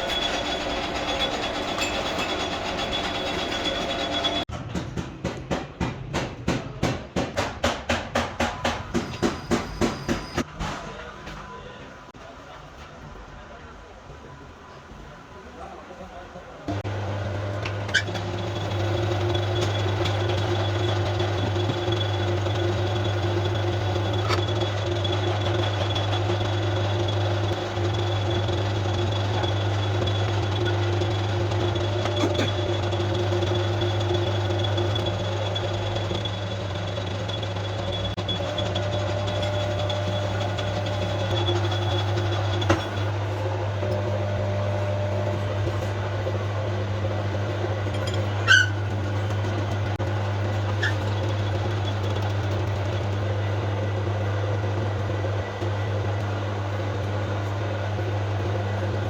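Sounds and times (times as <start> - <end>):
low machine hum: 16.7 - 59.0.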